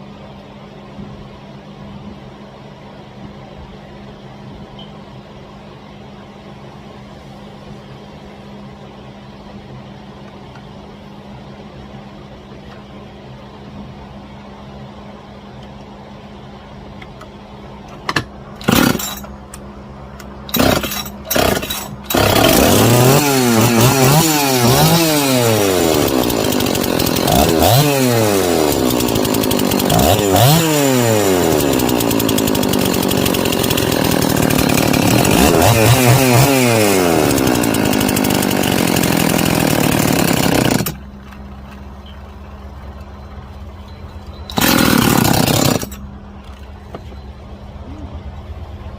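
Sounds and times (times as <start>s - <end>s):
chainsaw engine revving: 18.6s - 19.3s, 20.5s - 41.1s, 44.5s - 46.0s.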